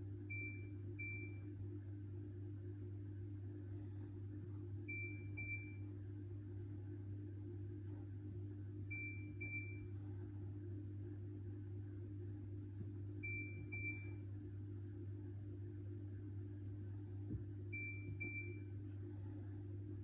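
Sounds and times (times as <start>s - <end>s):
steady low hum: 0.0s - 20.0s
washing machine panel beeps: 0.3s - 1.6s, 4.9s - 5.9s, 8.9s - 10.0s, 13.2s - 14.2s, 17.7s - 18.8s.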